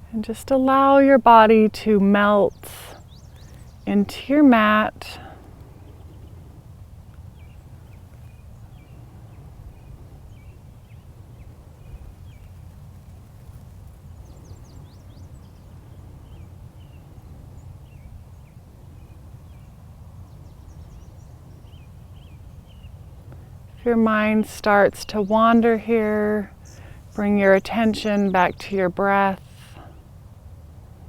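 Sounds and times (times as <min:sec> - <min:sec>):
small birds chirping: 0:00.2 - 0:06.5, 0:07.1 - 0:30.1.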